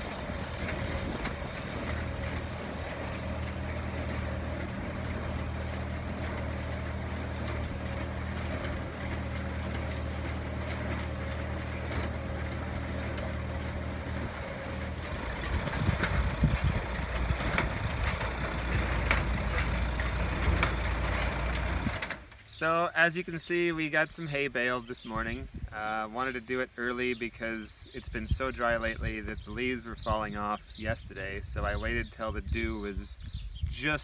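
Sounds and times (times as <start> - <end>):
baler mechanical clacks: 0.0 - 22.5
tractor engine humming: 0.0 - 22.8.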